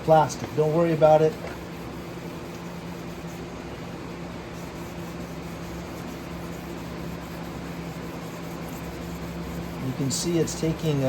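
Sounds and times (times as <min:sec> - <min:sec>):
sandpaper rubbing plastic: 0:01.5 - 0:03.5, 0:04.5 - 0:11.0.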